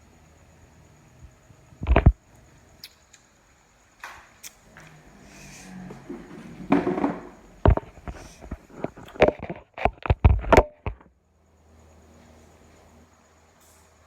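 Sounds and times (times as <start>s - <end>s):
sharp knocks: 6.6s - 7.9s.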